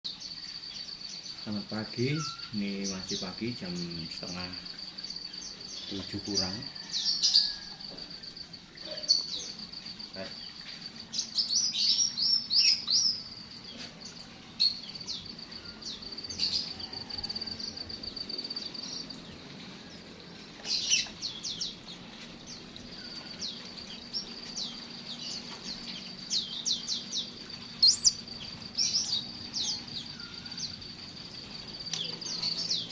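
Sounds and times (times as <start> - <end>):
bird trilling: 2.0 - 3.2, 26.3 - 30.8.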